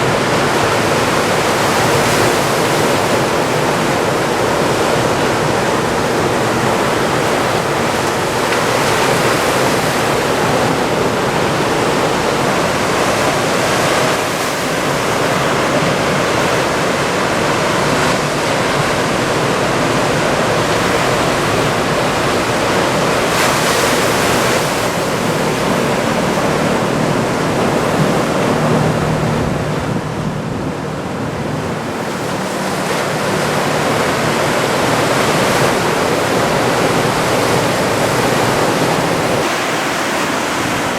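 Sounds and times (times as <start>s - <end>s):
waves breaking: 0.0s - 40.9s.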